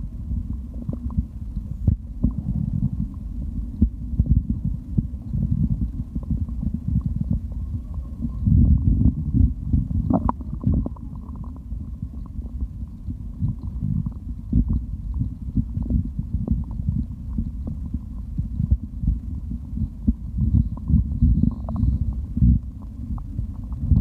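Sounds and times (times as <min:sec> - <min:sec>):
stomach gurgling: 0:00.0 - 0:24.0.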